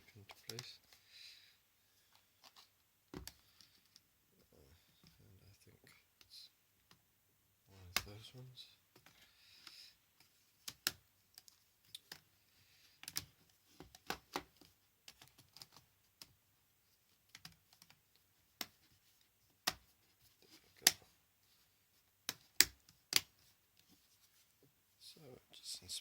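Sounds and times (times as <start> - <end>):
plastic keyboard clicks and taps: 2.4 - 3.4, 13.0 - 16.4, 17.3 - 18.0, 19.6 - 19.8.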